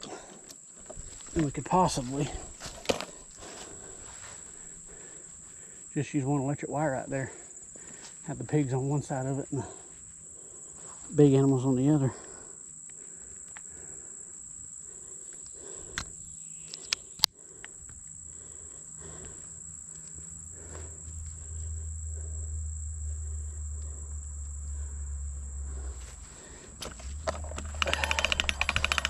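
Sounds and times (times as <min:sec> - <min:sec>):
crickets trilling: 0:00.0 - 0:29.0
low rumble: 0:19.5 - 0:28.9
fast even rattling: 0:25.7 - 0:29.0
sharp clicks: 0:26.8 - 0:29.0.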